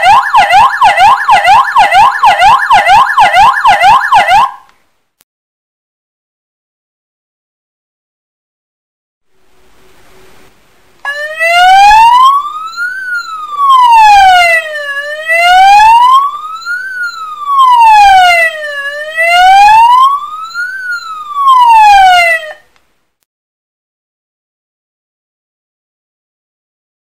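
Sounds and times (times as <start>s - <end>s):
electronic siren wailing: 0.0s - 4.7s, 11.1s - 22.6s.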